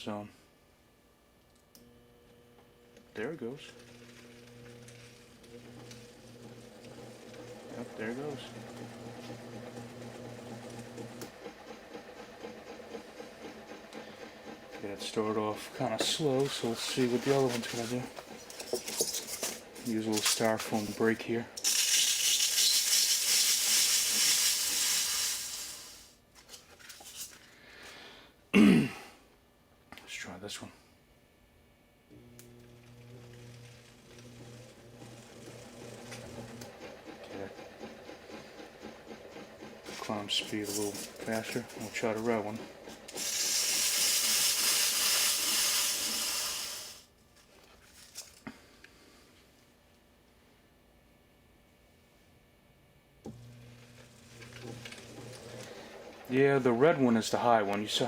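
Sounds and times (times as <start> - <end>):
styrofoam scraping hiss on motor: 19.3 - 26.2, 43.1 - 47.1.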